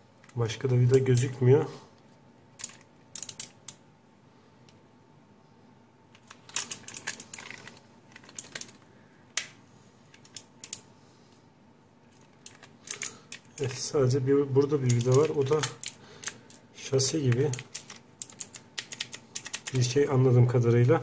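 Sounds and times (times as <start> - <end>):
keyboard parts clicking and knocking: 2.6 - 3.8, 6.2 - 8.8, 12.1 - 13.8, 14.6 - 16.6, 17.2 - 19.8.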